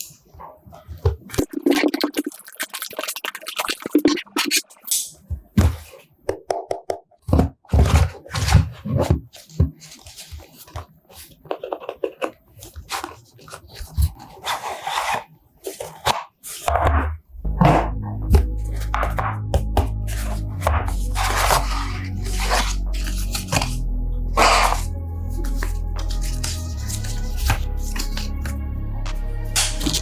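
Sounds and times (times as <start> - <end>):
packaging clicks and scrapes: 7.7 - 16.9, 20.0 - 28.4, 29.6 - 30.0
music: 17.2 - 30.0.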